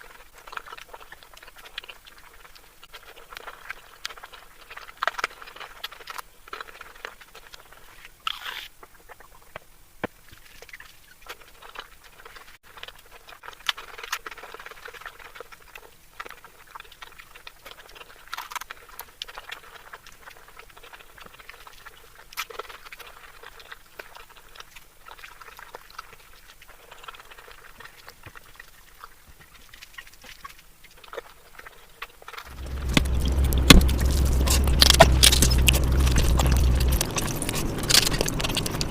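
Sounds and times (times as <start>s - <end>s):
loud low rumble: 32.5s - 38.9s
person chewing: 32.5s - 38.9s.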